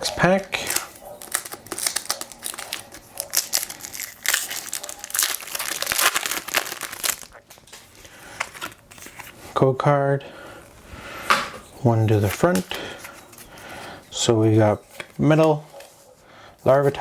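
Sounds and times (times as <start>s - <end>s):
foil wrapper crinkling: 0.0s - 9.4s.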